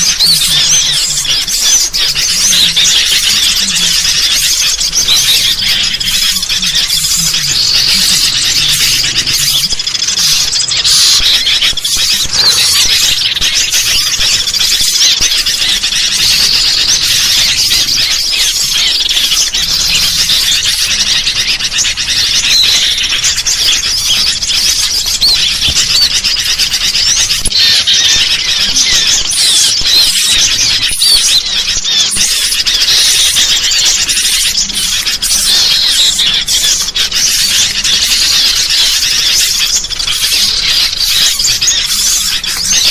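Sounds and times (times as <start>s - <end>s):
bulbul chatter: 0.0s - 42.9s
small birds chirping: 0.0s - 42.9s.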